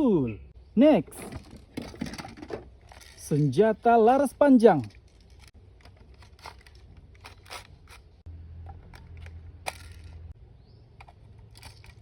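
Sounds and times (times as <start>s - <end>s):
plastic toy and packaging handled: 1.2s - 3.6s, 4.6s - 10.3s, 11.0s - 12.0s.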